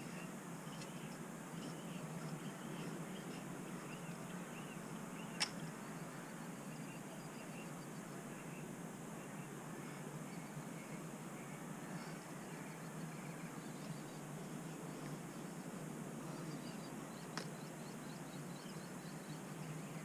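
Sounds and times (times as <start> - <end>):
outdoor background noise: 0.0 - 20.0.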